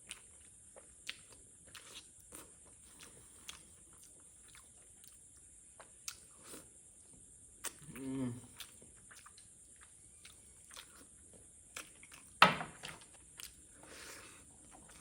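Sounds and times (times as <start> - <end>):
person chewing with wet mouth clicks: 0.0 - 6.7, 7.6 - 11.1, 11.7 - 13.6, 14.6 - 15.0.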